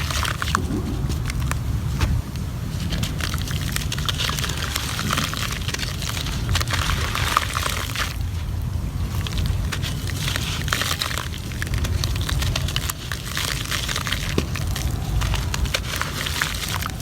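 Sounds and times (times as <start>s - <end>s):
low rumble: 0.0s - 9.8s
cement crumbling and crackling: 0.0s - 17.0s.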